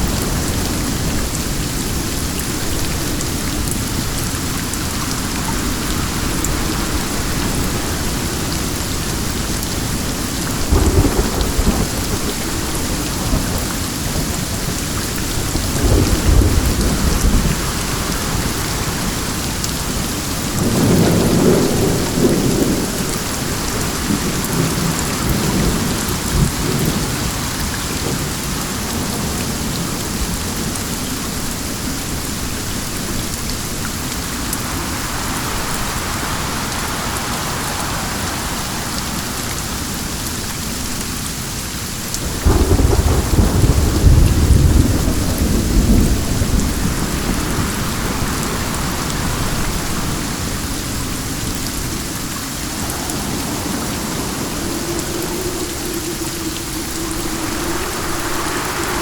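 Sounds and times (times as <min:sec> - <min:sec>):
rain falling: 0:00.0 - 0:59.0
low rumbles: 0:51.8 - 0:59.0.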